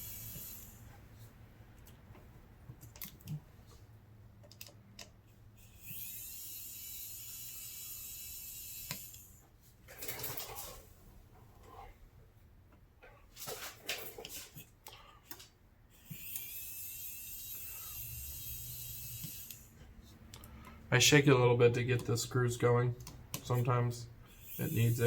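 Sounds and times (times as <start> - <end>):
electric screwdriver whining: 0.0 - 0.8, 5.6 - 9.3, 16.0 - 19.8, 24.3 - 25.0
small tools clicking: 14.8 - 20.8.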